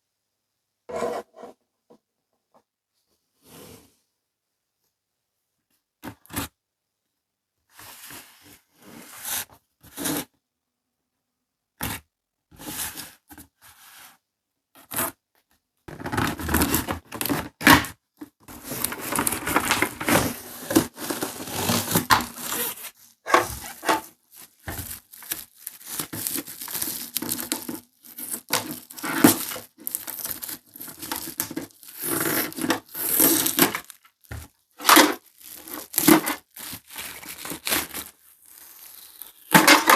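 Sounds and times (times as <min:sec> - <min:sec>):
packaging clicks and rustles: 0:18.5 - 0:39.9
packaging tearing and crinkling: 0:18.5 - 0:39.9.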